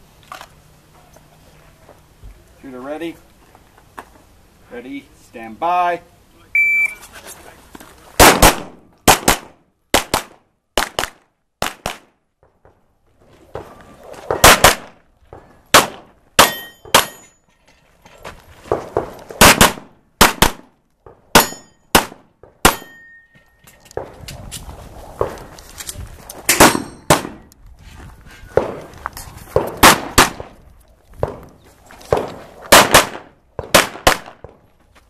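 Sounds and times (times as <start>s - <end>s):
pistol shots: 8.2s - 12.2s, 14.3s - 15.0s, 15.7s - 17.2s, 19.0s - 20.7s, 21.3s - 23.0s, 26.5s - 27.5s, 29.6s - 30.6s, 32.1s - 34.5s
steel targets ringing: 16.4s - 17.5s, 21.4s - 21.9s, 22.7s - 23.6s, 26.5s - 27.1s.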